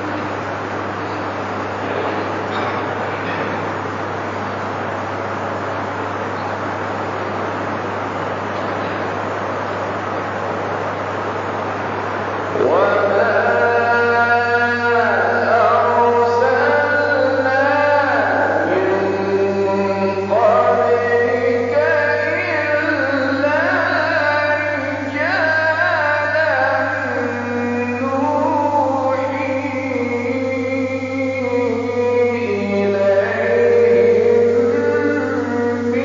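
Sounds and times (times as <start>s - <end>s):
steady low hum: 0.0s - 36.0s
man chanting: 12.5s - 36.0s.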